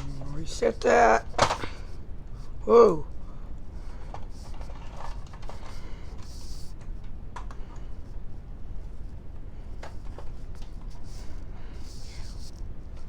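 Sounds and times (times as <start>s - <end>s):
light clicks and rattles: 4.0s - 7.9s.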